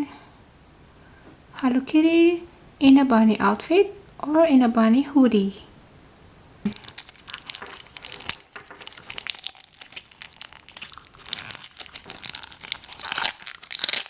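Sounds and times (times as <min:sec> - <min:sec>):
wrapper crinkling and tearing: 0:06.7 - 0:14.0.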